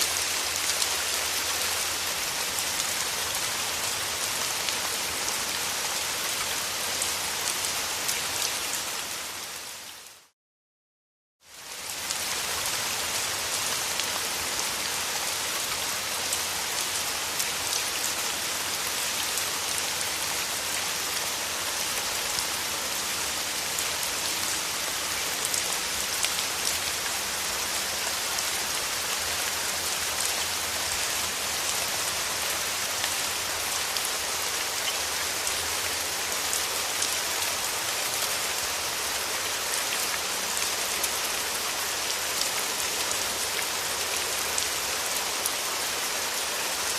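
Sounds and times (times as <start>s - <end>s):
heavy rain falling: 0.0s - 10.3s, 11.5s - 46.9s.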